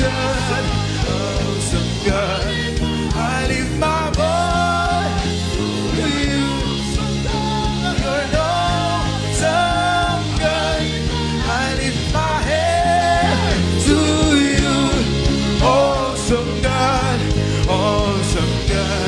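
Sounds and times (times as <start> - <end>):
gospel worship music: 0.0 - 19.0.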